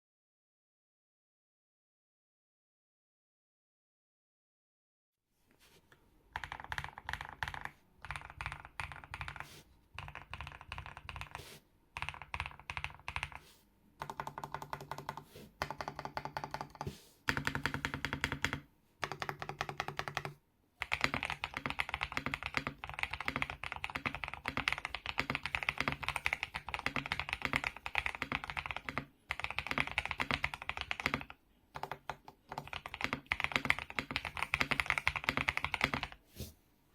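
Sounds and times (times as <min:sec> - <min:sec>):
mechanical keyboard typing: 0:06.3 - 0:11.4, 0:12.0 - 0:13.4, 0:14.0 - 0:36.2.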